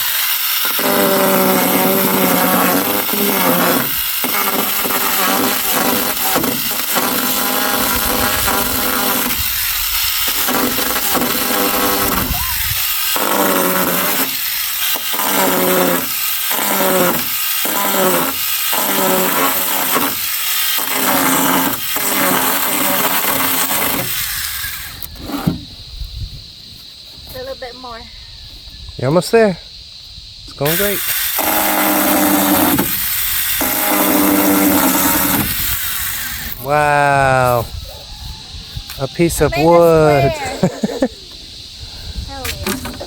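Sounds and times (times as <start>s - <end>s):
power saw cutting wood: 0.0s - 25.6s, 30.6s - 36.9s.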